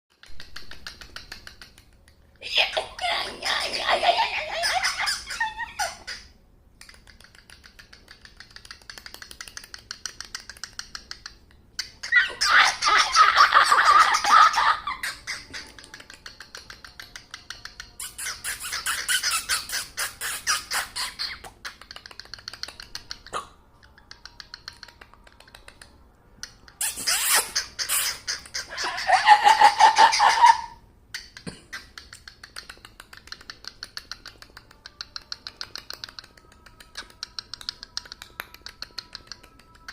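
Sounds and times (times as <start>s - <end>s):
cockatiel clicking and chattering: 0.1s - 39.9s
cockatiel squeaky calls: 18.0s - 21.4s, 26.8s - 29.1s.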